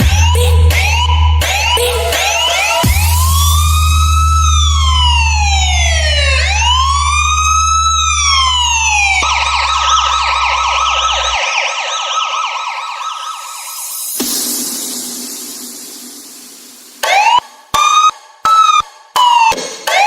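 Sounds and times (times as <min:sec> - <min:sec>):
electronic siren wailing and yelping: 0:00.7 - 0:14.0.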